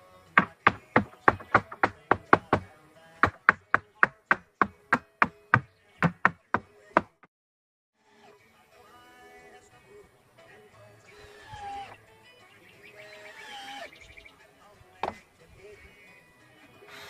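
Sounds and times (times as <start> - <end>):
faint background music: 0.0 - 7.1, 8.0 - 17.0
rapid hammer blows: 0.4 - 7.3.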